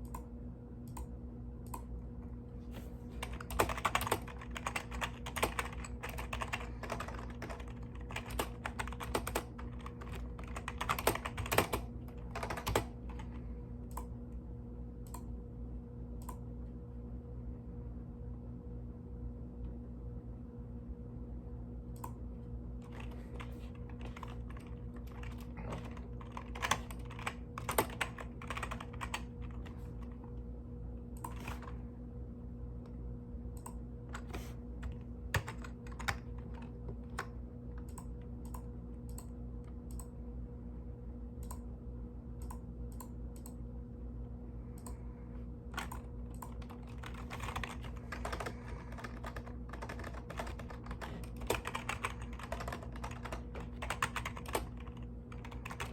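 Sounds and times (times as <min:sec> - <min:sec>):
mechanical keyboard typing: 0:03.2 - 0:13.4, 0:22.8 - 0:30.2, 0:31.2 - 0:31.8, 0:33.6 - 0:39.2, 0:45.8 - 0:55.9.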